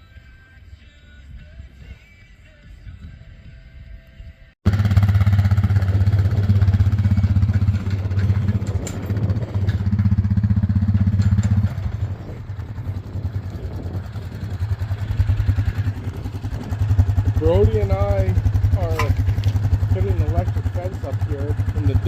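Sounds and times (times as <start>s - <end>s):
vehicle engine running: 4.7s - 22.0s.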